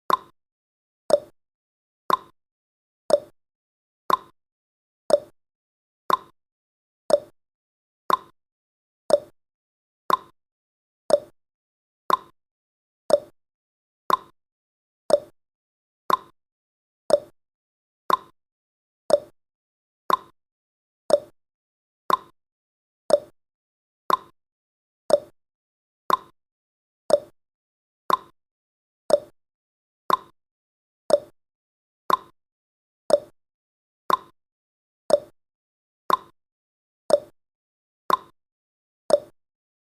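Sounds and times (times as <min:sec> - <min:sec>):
clock ticking: 0:00.1 - 0:00.3, 0:02.1 - 0:02.3, 0:04.1 - 0:04.3, 0:06.1 - 0:06.3, 0:08.1 - 0:08.3, 0:10.1 - 0:10.3, 0:12.1 - 0:12.3, 0:14.1 - 0:14.3, 0:16.1 - 0:16.3, 0:18.1 - 0:18.3, 0:19.1 - 0:19.3, 0:20.1 - 0:20.3, 0:22.1 - 0:22.3, 0:24.1 - 0:24.3, 0:26.1 - 0:26.3, 0:28.1 - 0:28.3, 0:29.1 - 0:29.3, 0:30.1 - 0:30.3, 0:31.1 - 0:31.4, 0:32.1 - 0:32.3, 0:33.1 - 0:33.4, 0:34.1 - 0:34.3, 0:35.1 - 0:35.4, 0:36.1 - 0:36.3, 0:37.1 - 0:37.4, 0:38.1 - 0:38.4, 0:39.1 - 0:39.4.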